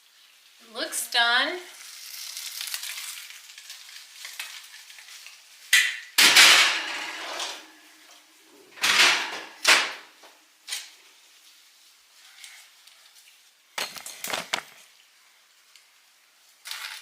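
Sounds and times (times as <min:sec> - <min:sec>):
faint food sizzle: 0:00.0 - 0:06.2, 0:10.1 - 0:13.8, 0:14.7 - 0:17.0.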